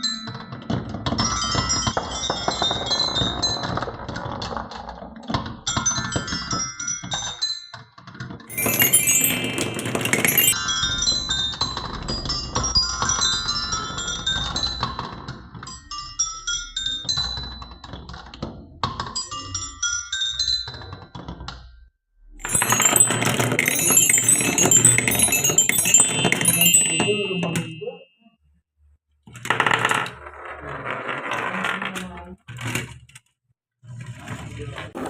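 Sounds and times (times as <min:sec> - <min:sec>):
glass marbles rolling and clattering: 0:00.0 - 0:04.7, 0:08.2 - 0:18.2, 0:22.4 - 0:28.0.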